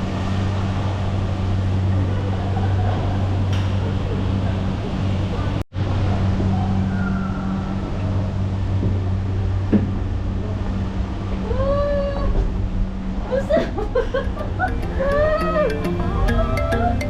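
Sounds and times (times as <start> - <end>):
steady low hum: 0.0 - 17.0
music with clicking percussion: 14.7 - 17.0.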